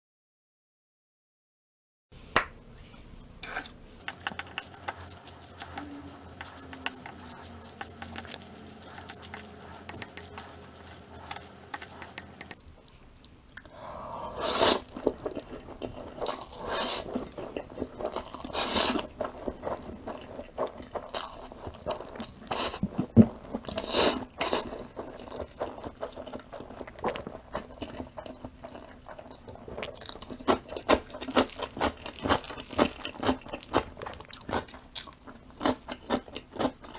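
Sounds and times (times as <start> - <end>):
utensil clicking on dish: 4.0 - 12.6
noodle slurping: 4.0 - 12.7, 13.8 - 34.0
chewing: 4.0 - 36.9.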